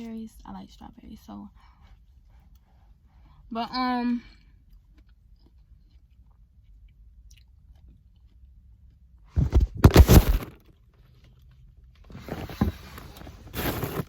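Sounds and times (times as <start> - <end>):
chewing and crunching fruit: 4.3 - 12.3.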